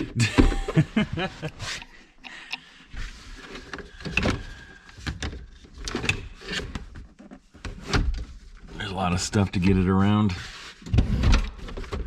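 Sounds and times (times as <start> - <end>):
plastic console scraping and knocking: 3.0 - 12.0.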